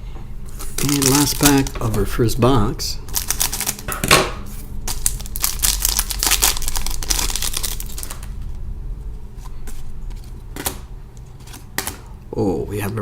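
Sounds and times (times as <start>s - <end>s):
plastic wrapper tearing and crinkling: 0.6s - 2.1s, 3.1s - 4.2s, 4.8s - 8.5s.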